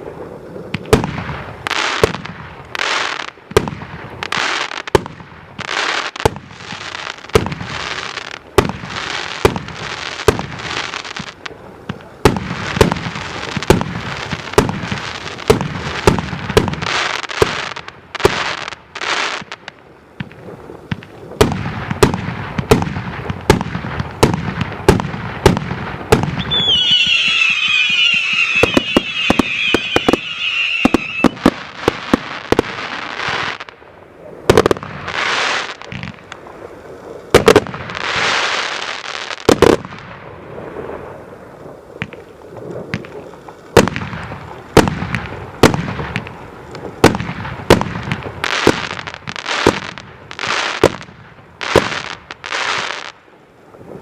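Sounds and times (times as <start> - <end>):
fireworks hissing and crackling: 0.0 - 54.0
fireworks bursting reports: 20.3 - 33.7
fireworks launch thumps: 21.0 - 32.7
high falling whistles: 26.4 - 31.5.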